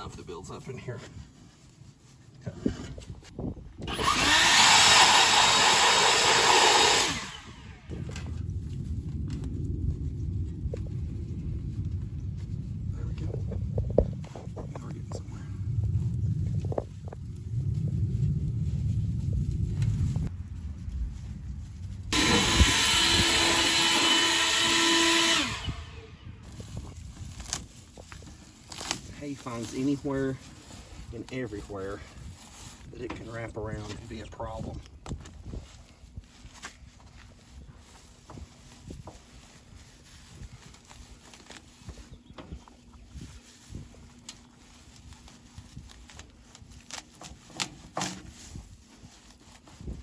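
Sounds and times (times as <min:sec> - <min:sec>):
handheld blower running: 0:03.8 - 0:07.9, 0:22.1 - 0:26.1
low rumble: 0:07.3 - 0:23.8
air blower hissing: 0:22.1 - 0:26.1.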